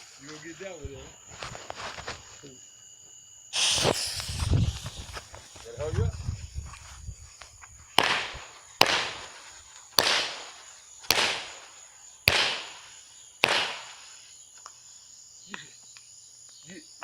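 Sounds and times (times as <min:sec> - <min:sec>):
high insect drone: 0:00.0 - 0:17.0
fireworks bangs: 0:03.5 - 0:06.2, 0:07.8 - 0:14.4.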